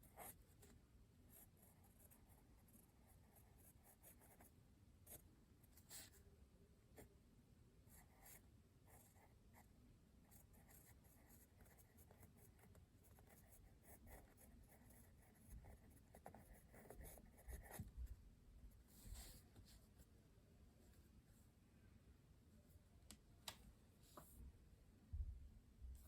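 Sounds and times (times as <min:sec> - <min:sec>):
pencil scratching on paper: 0:00.0 - 0:00.7, 0:01.3 - 0:04.5, 0:10.3 - 0:18.0.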